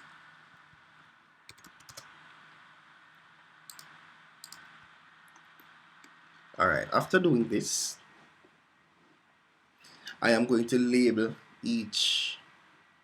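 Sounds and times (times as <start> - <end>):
faint steady hum: 0.0 - 13.0
mouse and keyboard clicks: 1.5 - 2.1, 3.7 - 4.7.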